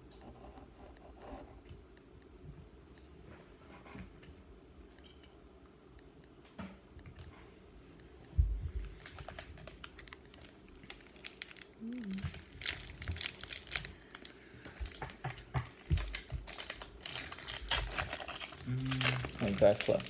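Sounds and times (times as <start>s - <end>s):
wrapper crinkling and tearing: 9.0s - 15.0s, 15.8s - 20.0s.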